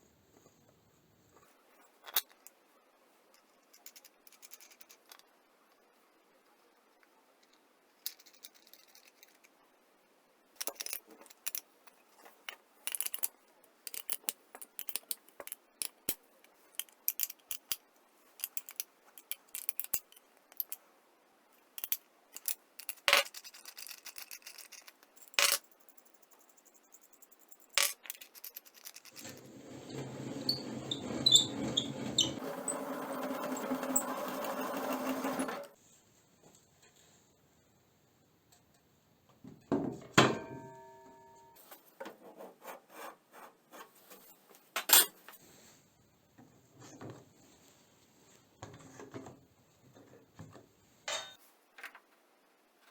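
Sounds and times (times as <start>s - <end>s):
small metal parts clinking: 3.4s - 5.3s, 8.0s - 9.5s, 10.6s - 20.8s, 21.6s - 29.4s.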